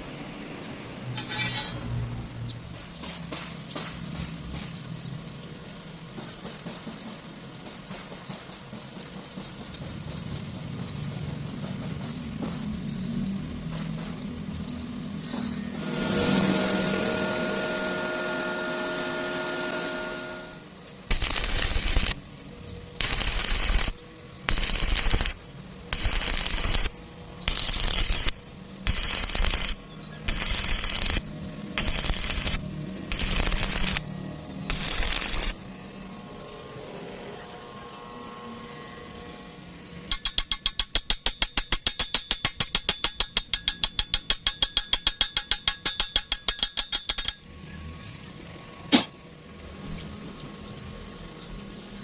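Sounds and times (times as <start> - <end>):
welding arc crackling: 19.2 - 35.8
rapid ringing metal strikes: 20.4 - 22.4, 23.0 - 35.6, 40.1 - 47.5.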